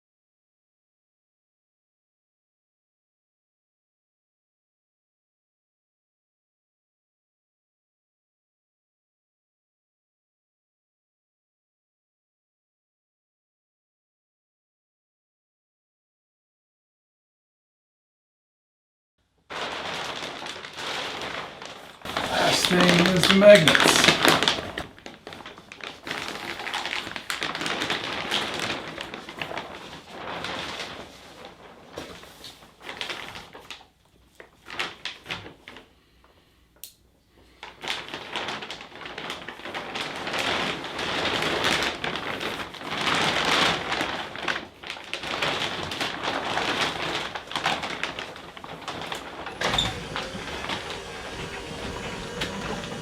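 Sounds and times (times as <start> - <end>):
plastic tarp crinkling and rustling: 19.4 - 36.3, 37.3 - 53.0.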